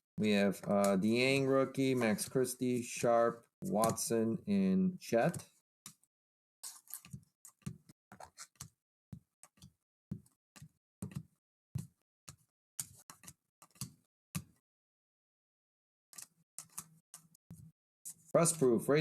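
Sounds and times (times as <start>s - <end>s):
cards tapping on a table: 11.0s - 11.9s.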